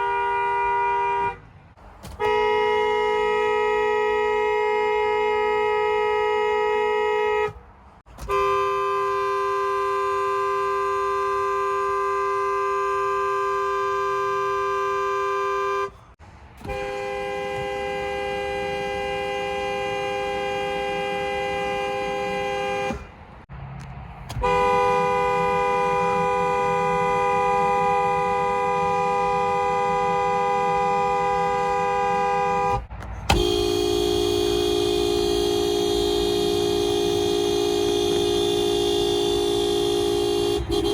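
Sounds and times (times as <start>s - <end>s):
car horns honking: 0.0s - 23.5s, 24.2s - 40.9s
lower-pitched horn: 16.6s - 23.1s, 24.4s - 40.9s.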